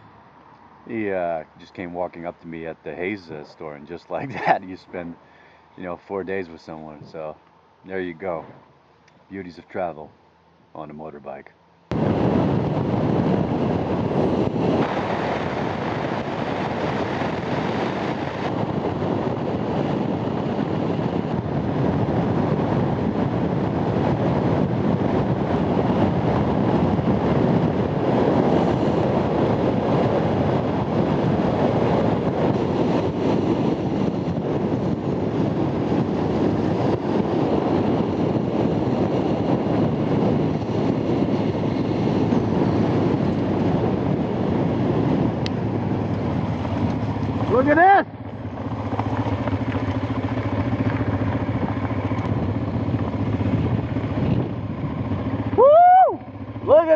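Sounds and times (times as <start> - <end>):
road noise: 0.0 - 56.9
wind rush: 11.9 - 56.9.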